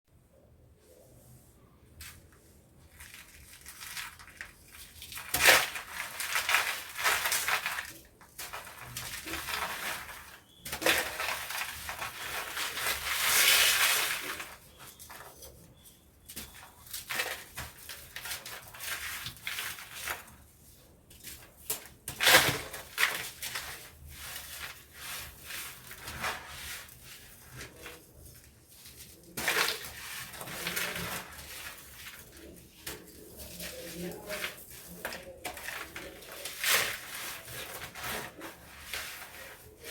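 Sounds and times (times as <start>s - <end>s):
cement blocks crumbling: 3.6s - 15.3s.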